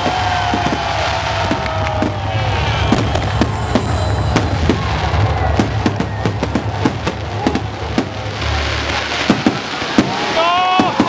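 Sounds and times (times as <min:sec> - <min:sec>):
fireworks popping and crackling: 0:00.0 - 0:11.0
low rumble: 0:00.5 - 0:09.2
faint high whistle: 0:02.5 - 0:05.5.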